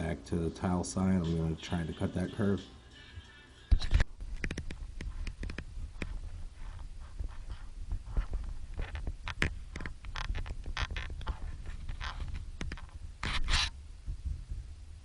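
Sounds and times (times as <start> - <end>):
low steady rumble: 4.1 - 15.0.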